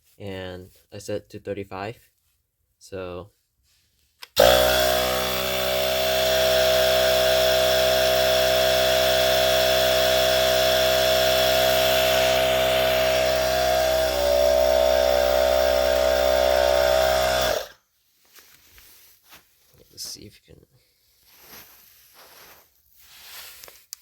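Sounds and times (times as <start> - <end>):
portable tire inflator running: 4.3 - 17.8.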